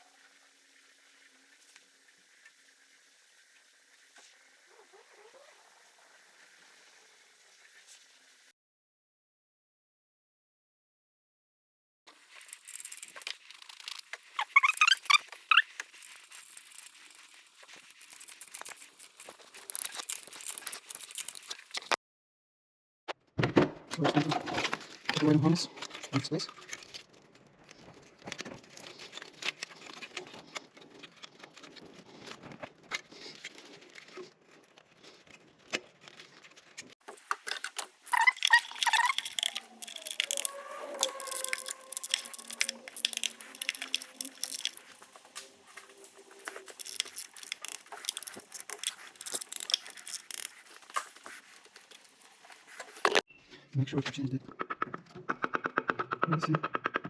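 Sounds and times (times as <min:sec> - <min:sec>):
brief squeak: 0:14.4 - 0:15.8, 0:38.1 - 0:45.1
plastic clips clicking and rattling: 0:37.1 - 0:53.2.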